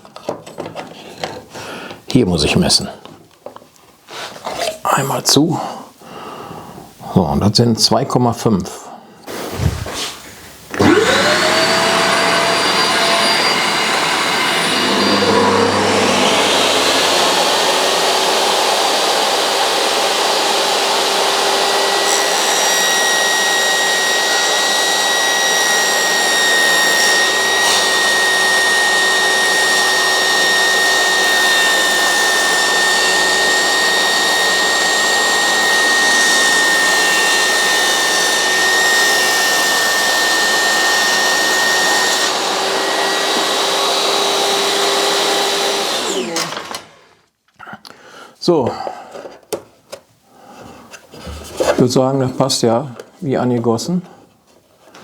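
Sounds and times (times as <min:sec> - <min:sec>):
motor with rushing vacuum noise: 0:09.3 - 0:47.1
steady machine whine: 0:10.7 - 0:18.8.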